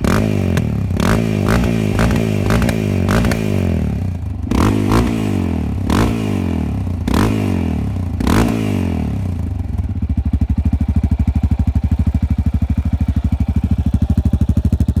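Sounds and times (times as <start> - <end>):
motorcycle engine blipping and idling: 0.0 - 15.0.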